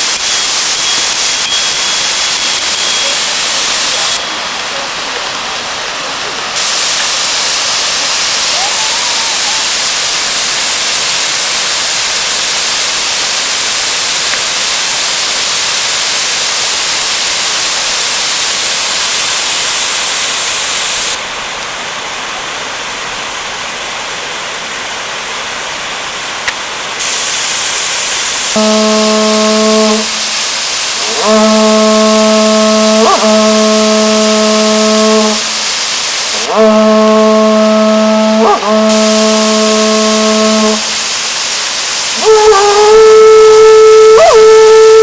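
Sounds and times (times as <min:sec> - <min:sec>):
steady pitched tone: 0:00.0 - 0:05.3
waterfall rushing: 0:00.0 - 0:45.0.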